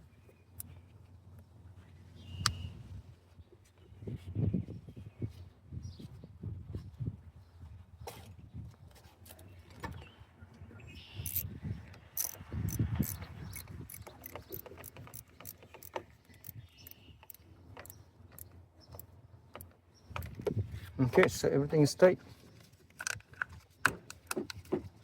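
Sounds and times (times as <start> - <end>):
wrench clicking: 11.2 - 11.5, 12.2 - 20.3.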